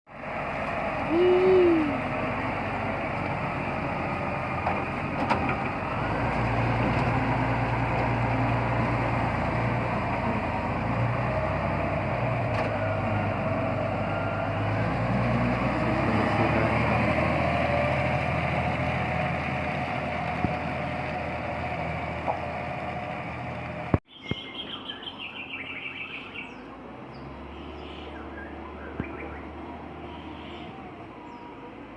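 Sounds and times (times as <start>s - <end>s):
bulldozer diesel engine running: 0.1s - 24.0s.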